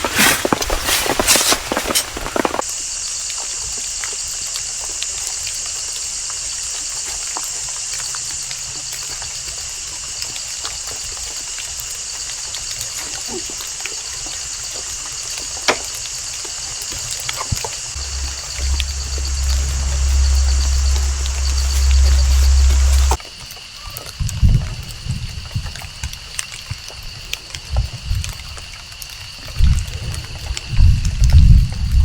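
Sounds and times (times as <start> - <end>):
steady high hiss: 17.9 - 23.2.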